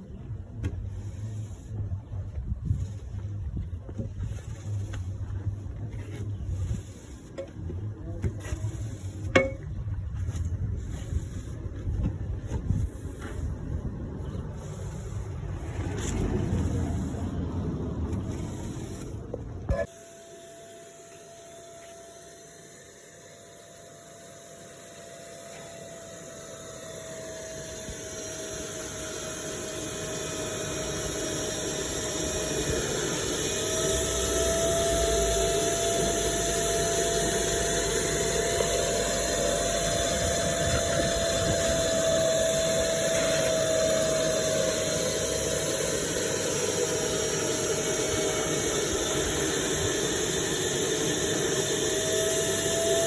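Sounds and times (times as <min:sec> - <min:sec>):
noisy airflow: 0:00.0 - 0:53.0
carpet cleaner motor whining: 0:19.8 - 0:53.0.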